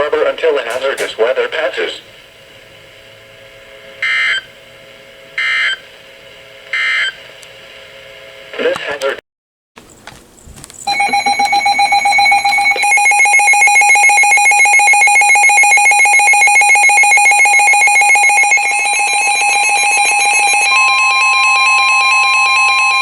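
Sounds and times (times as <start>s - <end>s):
pulsing electronic alarm tone: 10.8s - 23.0s.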